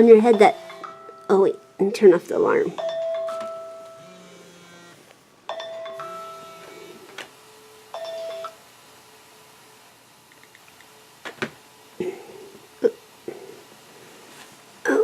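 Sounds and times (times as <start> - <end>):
electronic alarm tone: 2.8 - 7.0.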